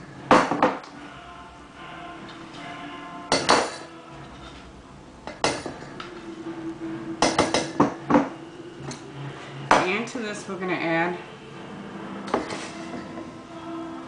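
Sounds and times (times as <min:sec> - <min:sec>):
metal utensils clinking on dishes: 0:03.3 - 0:04.6, 0:05.3 - 0:06.1, 0:12.3 - 0:13.2.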